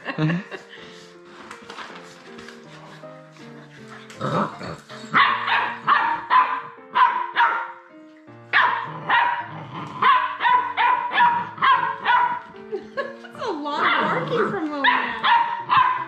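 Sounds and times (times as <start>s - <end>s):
puppy barking: 5.1s - 7.8s, 8.5s - 12.5s, 13.8s - 16.0s.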